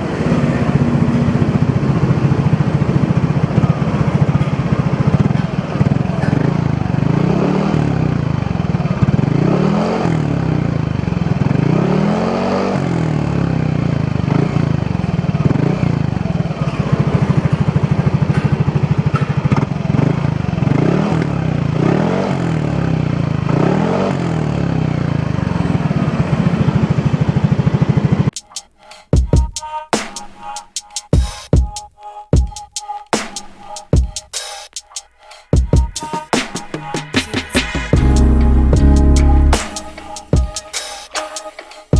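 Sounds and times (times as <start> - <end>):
scooter engine throttle blips: 0.0 - 28.4.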